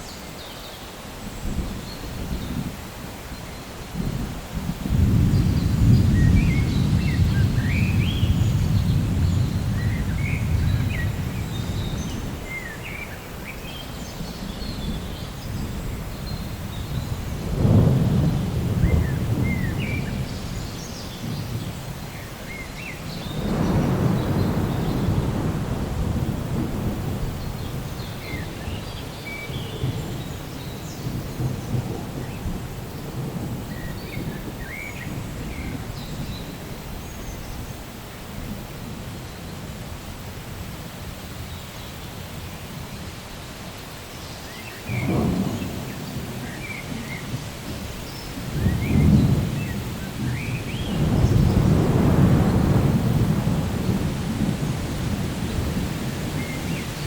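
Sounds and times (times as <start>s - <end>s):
steady rain: 0.0s - 57.0s
thunder rolling: 4.0s - 12.6s, 14.8s - 22.5s, 23.2s - 36.8s, 44.9s - 57.0s
thunder clap: 16.8s - 20.6s, 23.2s - 28.7s, 44.9s - 57.0s.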